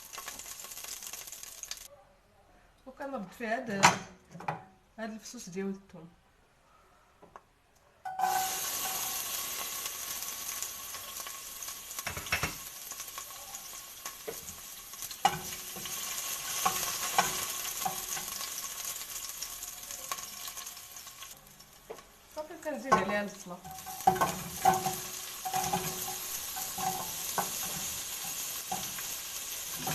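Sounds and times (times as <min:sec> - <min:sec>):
garlic sizzling in oil: 0:00.0 - 0:01.9, 0:08.1 - 0:29.9.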